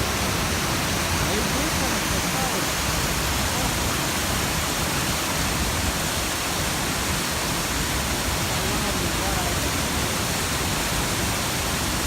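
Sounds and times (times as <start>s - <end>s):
creek water flowing: 0.0s - 12.0s.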